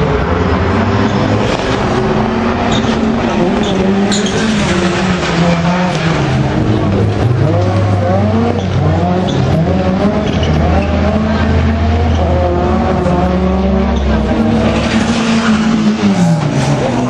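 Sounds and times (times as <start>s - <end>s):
racing car engines revving: 0.0s - 17.0s.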